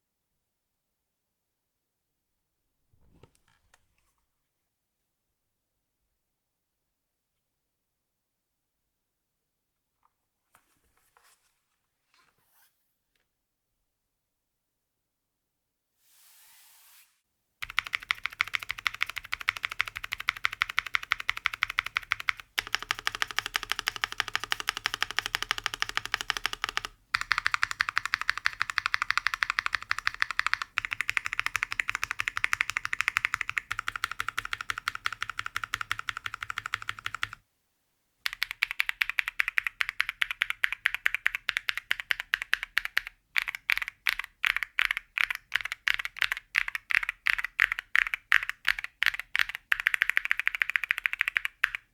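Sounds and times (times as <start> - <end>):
mechanical keyboard typing: 17.6 - 37.4, 38.2 - 51.9.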